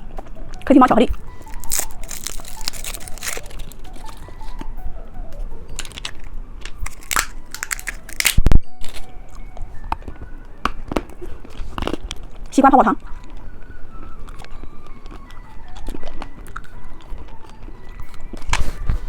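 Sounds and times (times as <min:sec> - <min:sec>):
candy wrapper crinkling: 0:01.2 - 0:04.7, 0:05.7 - 0:09.5.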